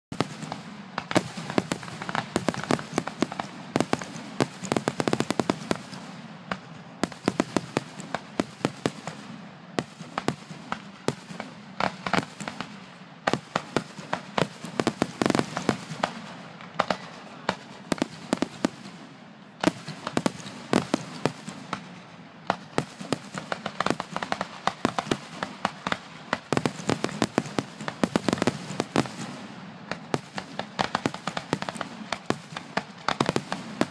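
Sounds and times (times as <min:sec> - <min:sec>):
fireworks bangs and crackling: 0:00.1 - 0:33.9.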